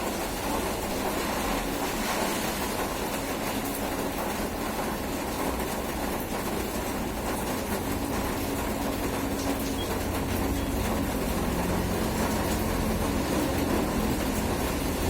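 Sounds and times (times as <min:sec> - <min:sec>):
heavy rain hiss: 0:00.0 - 0:15.0.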